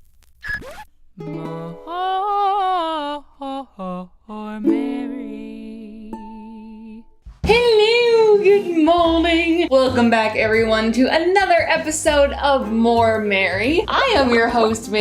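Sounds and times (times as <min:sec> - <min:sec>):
plucked strings: 0:01.2 - 0:02.4, 0:04.6 - 0:07.3.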